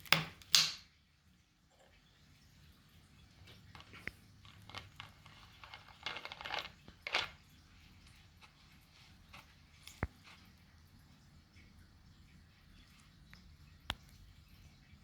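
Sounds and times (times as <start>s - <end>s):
faint steady hum: 0.0s - 15.0s
dog stirring with soft rustles: 1.9s - 11.3s.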